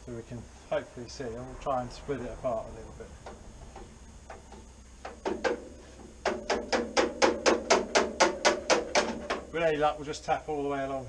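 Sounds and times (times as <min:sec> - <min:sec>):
hammer tapping a chisel on metal: 0:03.2 - 0:09.5.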